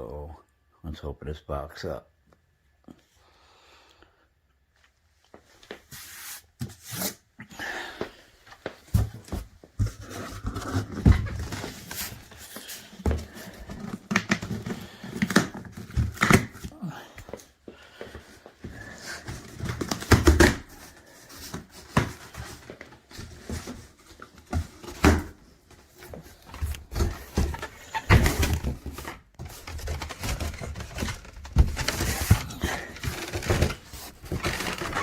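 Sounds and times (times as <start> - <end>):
packing material rustling: 26.1 - 35.0.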